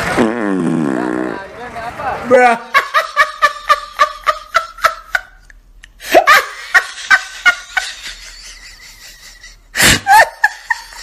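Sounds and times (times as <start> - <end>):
person laughing: 2.3 - 11.0.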